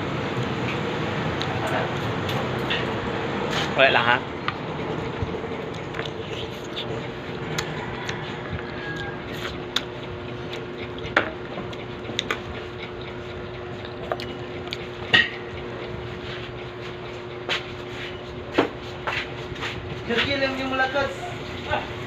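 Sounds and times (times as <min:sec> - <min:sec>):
steady low hum: 0:00.0 - 0:22.0
wet squishy eating sounds: 0:05.0 - 0:15.1.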